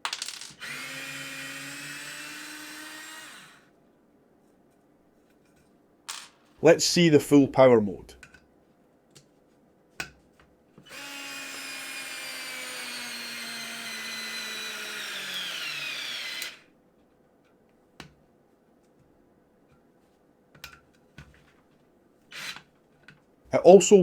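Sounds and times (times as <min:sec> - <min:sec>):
electric screwdriver motor whine: 0:00.6 - 0:03.6, 0:10.9 - 0:16.6.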